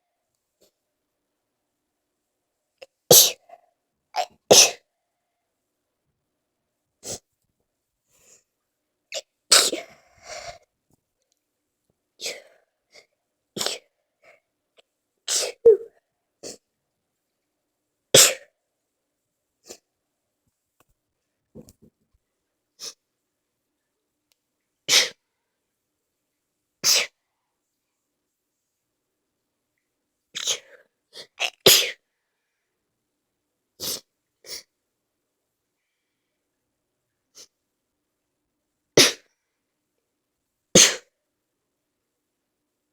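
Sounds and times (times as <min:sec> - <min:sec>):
person sneezing: 0:03.1 - 0:03.5, 0:04.2 - 0:04.8, 0:09.5 - 0:10.6, 0:13.6 - 0:13.9, 0:15.3 - 0:16.6, 0:18.2 - 0:18.5, 0:24.9 - 0:25.2, 0:26.8 - 0:27.2, 0:30.4 - 0:32.0, 0:39.0 - 0:39.3, 0:40.8 - 0:41.1.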